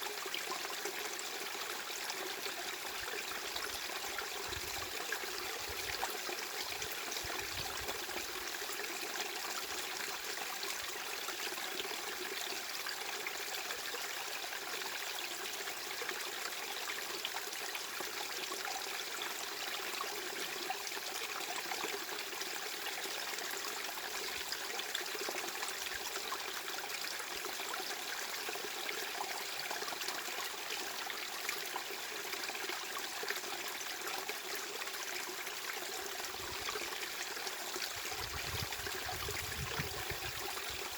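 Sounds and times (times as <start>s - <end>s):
flowing trickling water: 0.1s - 11.4s, 20.9s - 40.9s.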